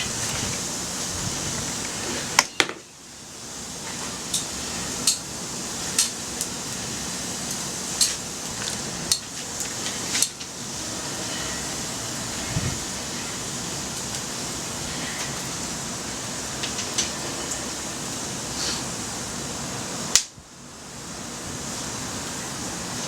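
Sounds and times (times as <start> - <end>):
steady fire hiss: 0.0 - 23.0
wood fire crackling: 0.0 - 23.0
sharp pops of fire: 20.1 - 20.4.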